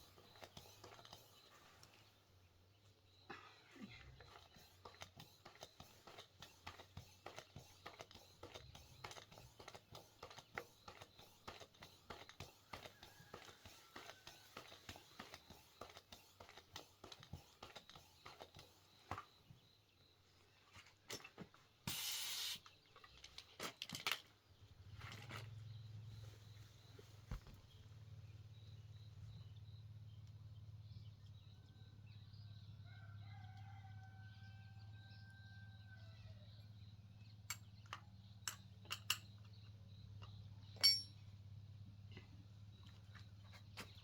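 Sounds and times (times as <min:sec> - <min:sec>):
burst of hiss: 0:21.9 - 0:22.6.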